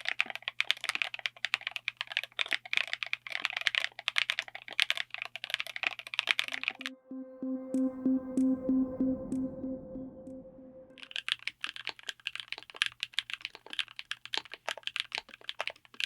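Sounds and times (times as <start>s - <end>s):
steady low hum: 6.5s - 11.1s
electronic music with pulsing tone: 6.5s - 11.2s.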